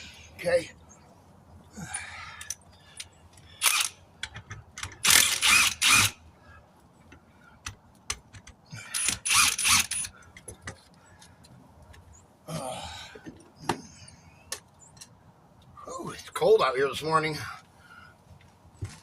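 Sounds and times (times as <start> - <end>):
tools clicking and clattering: 2.4 - 6.1, 7.1 - 12.1.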